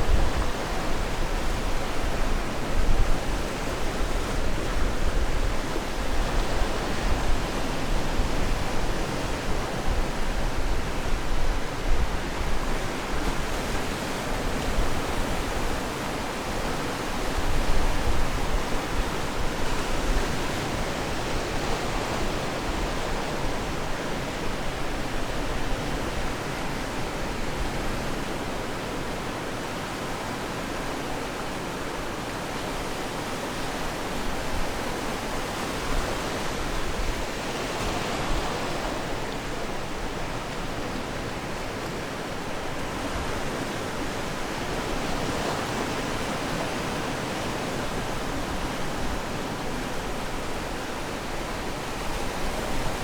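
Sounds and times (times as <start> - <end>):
ocean waves on shore: 0.0 - 53.0.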